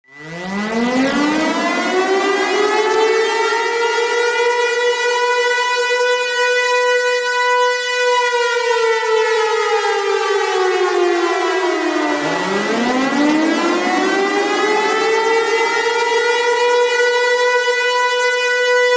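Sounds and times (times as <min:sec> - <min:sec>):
warning siren wailing: 0:00.0 - 0:18.9.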